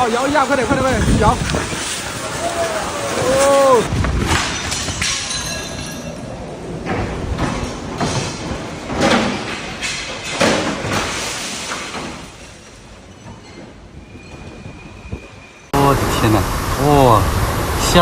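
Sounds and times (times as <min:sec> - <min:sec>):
rain: 0:00.0 - 0:08.2, 0:15.8 - 0:18.0
storm wind: 0:00.0 - 0:18.0
loud bangs and rattles: 0:06.8 - 0:12.8.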